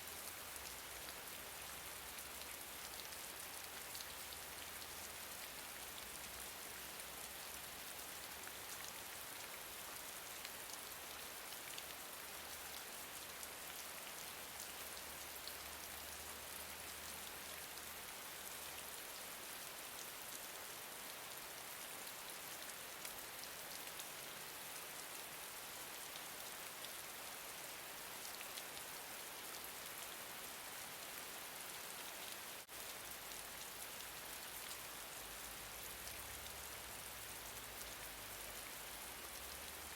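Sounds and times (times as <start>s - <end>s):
gentle rain hiss: 0.0s - 39.9s.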